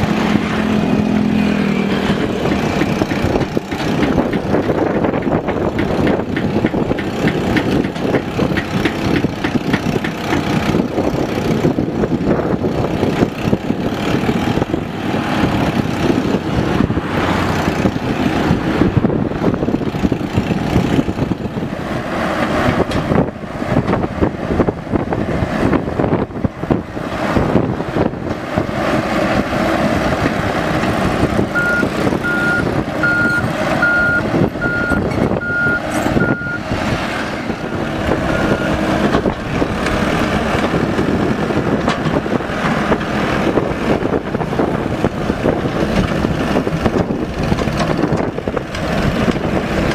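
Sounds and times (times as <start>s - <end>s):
excavator diesel engine running: 0.0s - 49.9s
backup alarm beeping: 31.6s - 36.6s.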